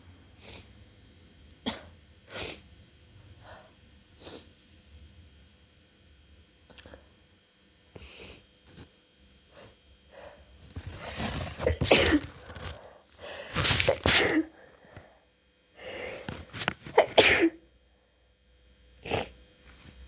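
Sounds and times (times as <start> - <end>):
in-breath: 3.4 - 3.8, 9.5 - 10.6, 12.6 - 13.7, 14.5 - 16.4
person sneezing: 11.5 - 12.7, 13.4 - 14.6, 16.9 - 17.6.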